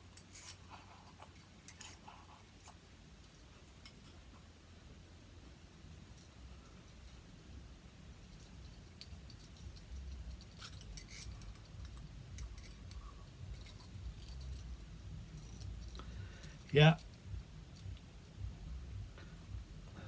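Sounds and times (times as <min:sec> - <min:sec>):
small hard parts clicking: 0:08.1 - 0:20.0
low handling rumble: 0:09.6 - 0:20.0.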